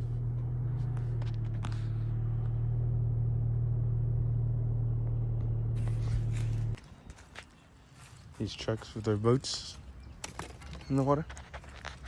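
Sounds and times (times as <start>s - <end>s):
car engine idling: 0.0s - 6.8s.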